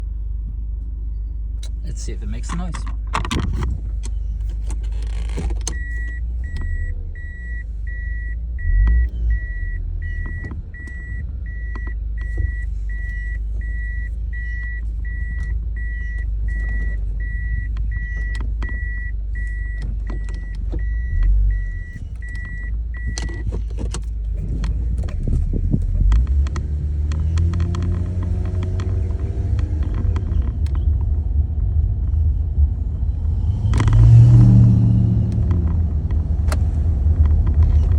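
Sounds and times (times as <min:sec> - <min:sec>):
steady low rumble: 0:00.0 - 0:37.9
car warning chime beeping: 0:05.7 - 0:23.6.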